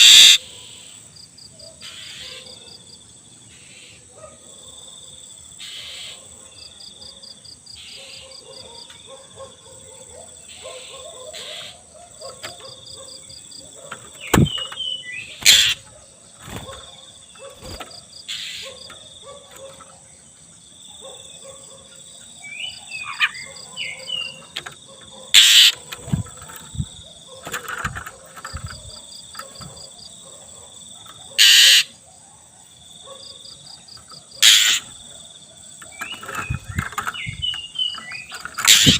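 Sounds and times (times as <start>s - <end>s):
bird whistles and harsh calls: 0.0s - 0.4s, 14.1s - 15.9s, 25.4s - 26.3s, 31.4s - 31.9s, 34.4s - 34.9s, 35.9s - 38.9s
crickets chirping: 0.0s - 38.9s.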